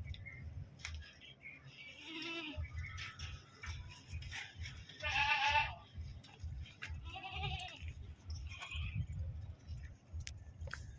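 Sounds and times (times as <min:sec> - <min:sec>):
goats bleating: 0:01.7 - 0:02.7, 0:04.8 - 0:05.9, 0:06.8 - 0:09.0
low pulsing rumble: 0:05.6 - 0:10.9.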